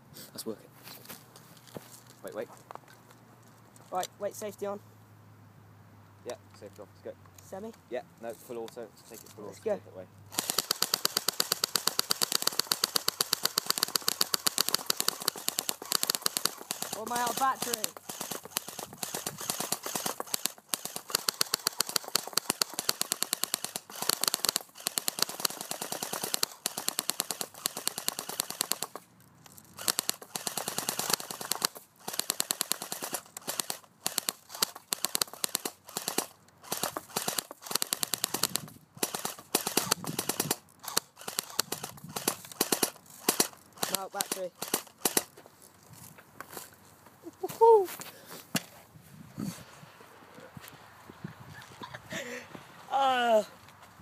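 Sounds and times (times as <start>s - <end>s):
airsoft rifle firing full auto: 10.3s - 29.1s, 29.7s - 45.3s.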